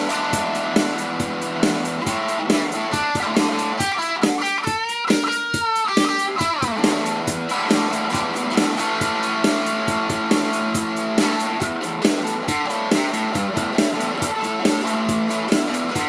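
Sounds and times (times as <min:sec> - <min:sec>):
steady beat: 0:00.0 - 0:16.0.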